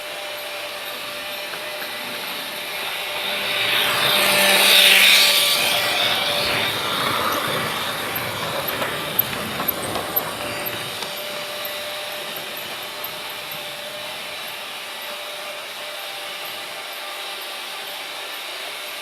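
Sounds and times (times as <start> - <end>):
freight train rumbling: 0.0 - 16.0
sharp knocks: 2.9 - 14.5.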